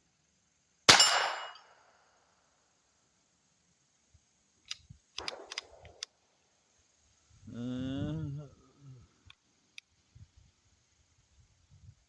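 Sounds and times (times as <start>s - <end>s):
echoing pistol shot tail: 0.9s - 1.7s
pistol handling metallic clicks: 4.6s - 6.2s.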